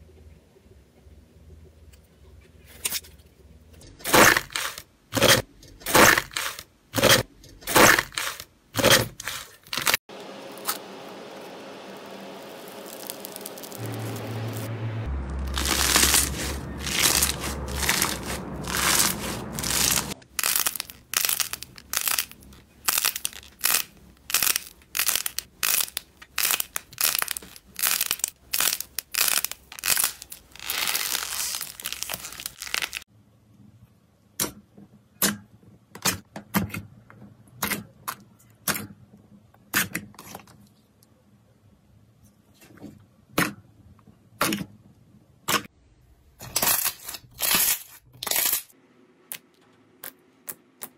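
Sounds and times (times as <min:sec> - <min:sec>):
slime squelching and crackling: 0:12.5 - 0:14.7, 0:15.4 - 0:33.1.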